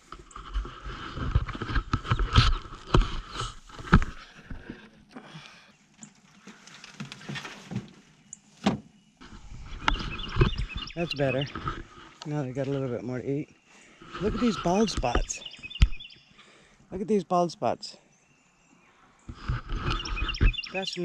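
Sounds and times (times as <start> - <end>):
cage scraping and rattling on grass: 0.0 - 4.8, 6.2 - 8.2, 9.2 - 13.4, 14.0 - 15.4.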